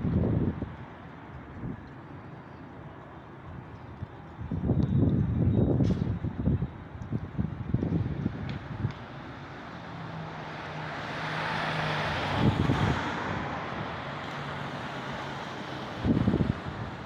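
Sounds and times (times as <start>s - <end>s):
wind buffeting microphone: 0.0s - 2.0s, 3.4s - 9.0s, 12.1s - 14.1s, 15.9s - 17.0s.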